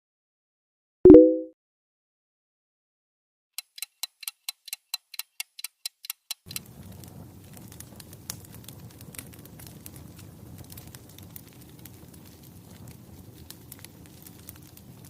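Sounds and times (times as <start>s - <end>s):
sharp ringing ticks: 3.6s - 6.6s
fire crackling: 6.4s - 15.0s.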